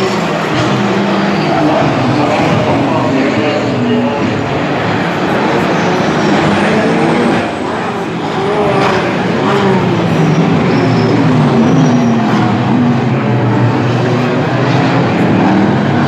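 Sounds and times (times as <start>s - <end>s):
race car engines running hard: 0.0s - 16.0s.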